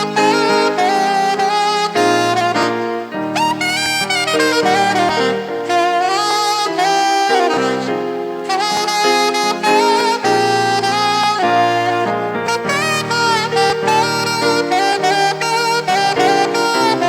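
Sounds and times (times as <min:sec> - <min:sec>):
saxophone slow melody: 0:00.0 - 0:17.0
sustained backing chords: 0:00.0 - 0:17.0.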